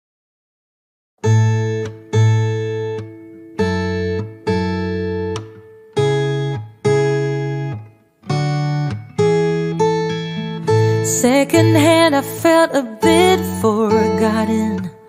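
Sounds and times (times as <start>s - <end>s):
acoustic guitar strumming: 1.2s - 15.0s
person singing pop song: 10.6s - 15.0s.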